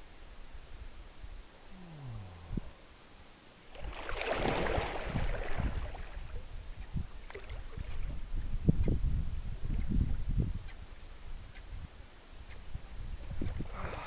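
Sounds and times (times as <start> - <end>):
water splashing from swimming: 3.7 - 6.4.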